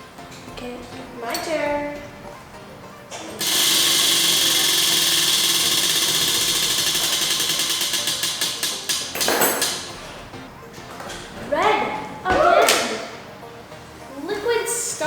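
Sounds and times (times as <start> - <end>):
prize wheel pointer clicking: 3.3 - 9.9.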